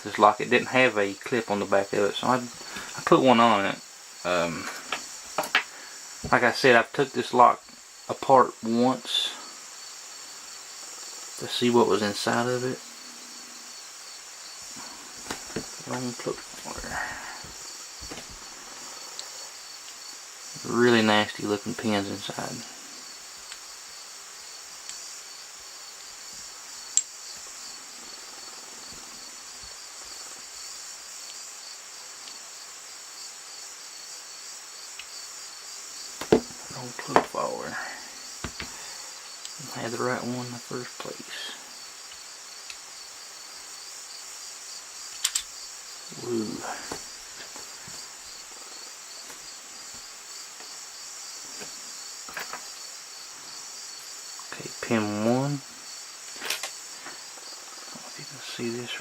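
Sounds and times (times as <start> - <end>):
crickets chirring: 0.0 - 59.0
sharp click: 45.1 - 45.5.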